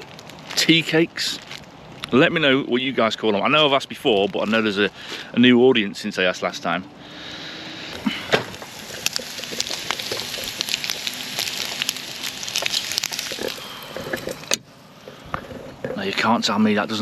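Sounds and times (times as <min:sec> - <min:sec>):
bacon sizzling in a frying pan: 0:08.0 - 0:14.6.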